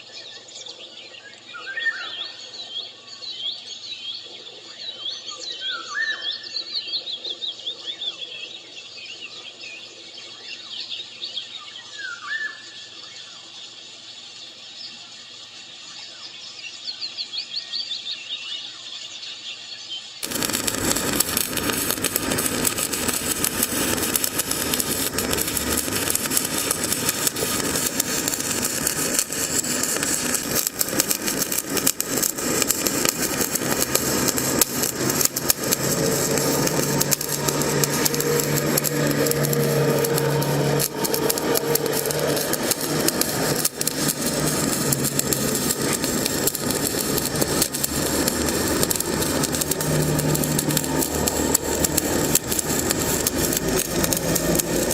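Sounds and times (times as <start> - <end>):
low hum: 20.2 - 54.9
welding arc crackling: 20.2 - 54.9.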